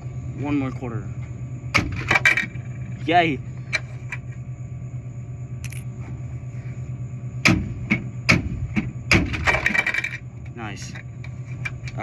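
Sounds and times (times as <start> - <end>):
steady low hum: 0.0 - 12.0
coins clinking in coin slot: 5.6 - 5.9, 9.3 - 10.2.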